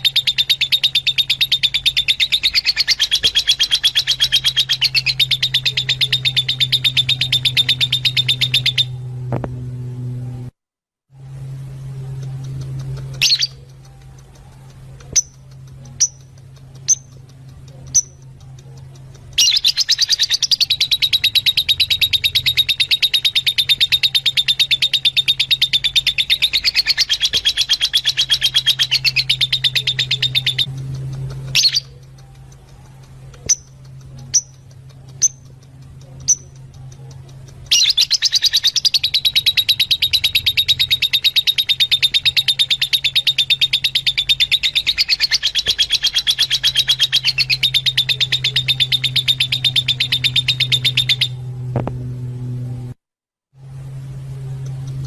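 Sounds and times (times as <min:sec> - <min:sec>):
bird sharp calls: 0:00.0 - 0:09.0, 0:13.0 - 0:13.8, 0:19.4 - 0:30.7, 0:31.3 - 0:32.1, 0:37.7 - 0:51.4
lovebirds chirping: 0:00.0 - 0:09.1, 0:12.1 - 0:51.4
steady low hum: 0:00.0 - 0:55.0.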